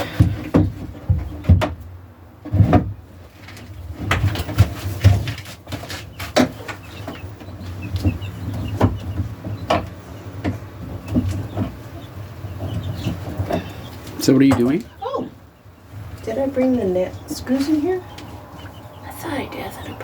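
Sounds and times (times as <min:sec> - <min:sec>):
chickens calling: 0:00.0 - 0:20.0
nesting box and tools clattering: 0:02.5 - 0:09.9, 0:12.6 - 0:14.9.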